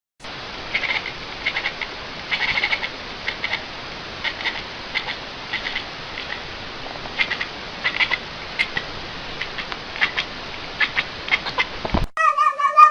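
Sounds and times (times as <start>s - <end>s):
steady hiss: 0.2s - 12.1s
animal chirping calls: 9.4s - 12.9s.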